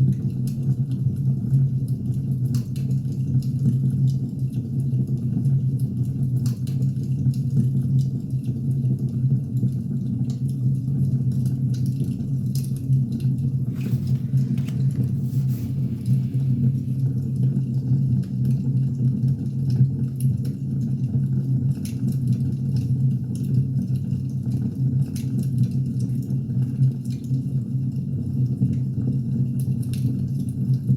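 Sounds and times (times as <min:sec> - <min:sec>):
fire roaring: 0:12.6 - 0:18.4.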